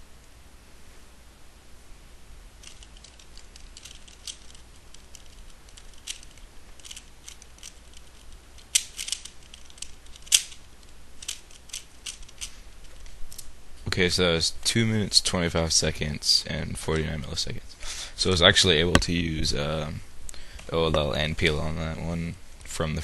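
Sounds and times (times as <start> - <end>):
plastic puzzle cube clicking: 2.6 - 12.5
sharp plastic clacks: 2.6 - 13.5.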